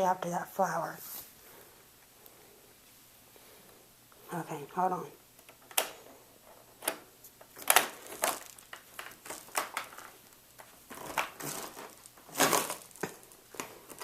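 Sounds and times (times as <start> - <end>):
plastic packaging crinkling: 7.6 - 14.0.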